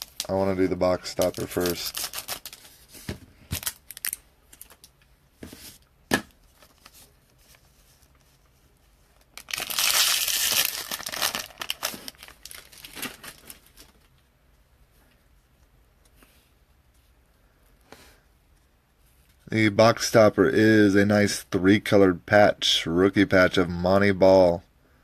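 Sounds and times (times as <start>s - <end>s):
wrapper tearing and crinkling: 0.0s - 2.8s, 3.6s - 4.9s, 9.3s - 14.1s.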